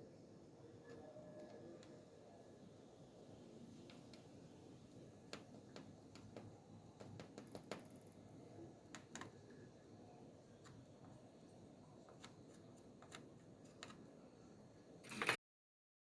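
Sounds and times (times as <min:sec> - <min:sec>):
small clicks and taps: 0:03.8 - 0:04.4, 0:05.2 - 0:09.5, 0:12.0 - 0:14.1.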